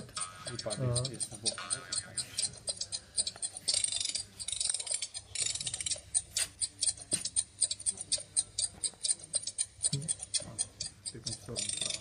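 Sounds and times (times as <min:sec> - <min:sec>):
alarm clock ticking: 0:00.0 - 0:12.0.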